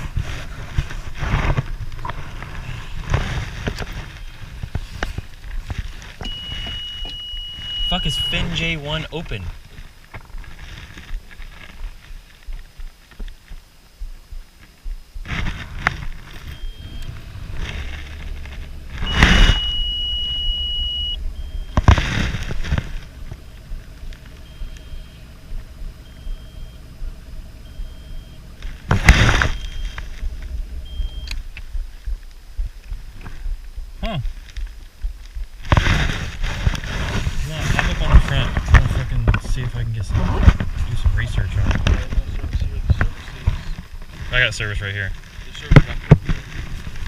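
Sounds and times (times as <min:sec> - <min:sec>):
low rumble: 0:00.0 - 0:47.0
high electronic beep: 0:06.2 - 0:09.4, 0:16.4 - 0:17.2, 0:19.0 - 0:21.9, 0:24.4 - 0:28.6, 0:29.3 - 0:30.1, 0:30.8 - 0:31.4.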